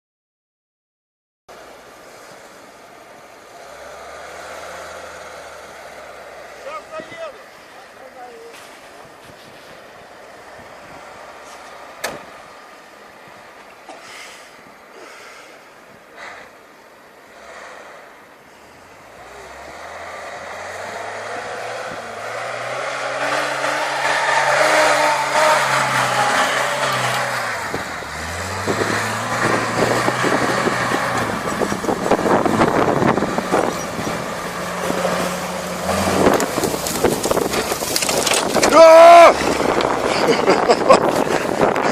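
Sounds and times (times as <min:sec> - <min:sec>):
vehicle engine accelerating: 0:03.4 - 0:06.9, 0:17.3 - 0:41.9.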